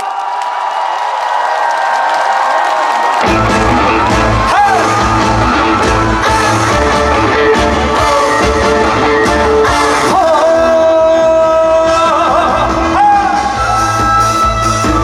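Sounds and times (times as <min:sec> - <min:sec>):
live band music with steady beat: 0:03.2 - 0:15.0.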